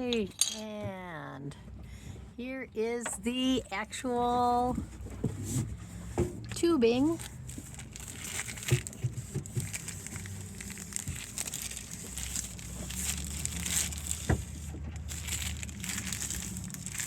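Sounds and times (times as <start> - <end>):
packing material crinkling: 7.0 - 17.0.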